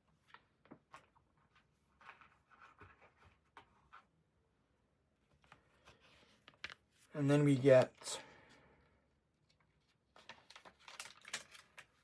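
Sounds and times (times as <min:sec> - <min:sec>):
paper rustling: 0:00.1 - 0:04.1, 0:09.5 - 0:12.0.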